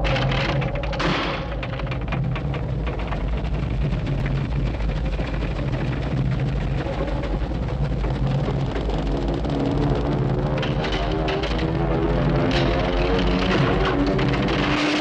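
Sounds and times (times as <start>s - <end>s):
deep rumble: 0.0s - 15.0s
small rattles and clatters: 0.0s - 15.0s.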